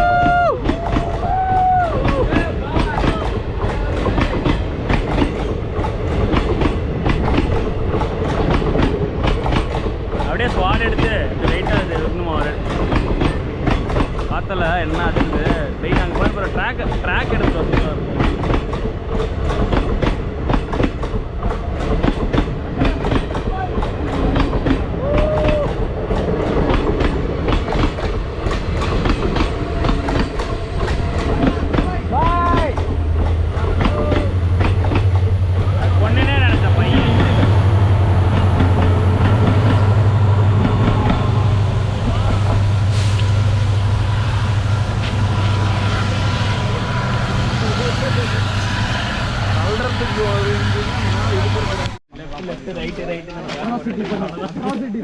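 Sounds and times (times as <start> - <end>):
wheels clickety-clack: 0.0 - 41.4, 51.4 - 55.0
train rumbling on rails: 0.0 - 52.1.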